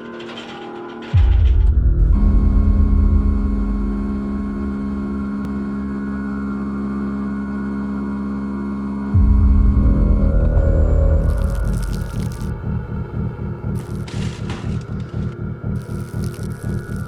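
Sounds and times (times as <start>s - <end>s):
sustained hum: 0.0s - 17.0s
deep steady rumble: 1.2s - 5.9s, 9.1s - 17.0s.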